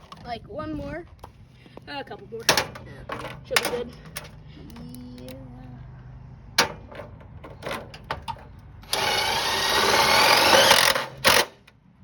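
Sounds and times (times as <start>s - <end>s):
power drill whining: 8.8s - 11.6s.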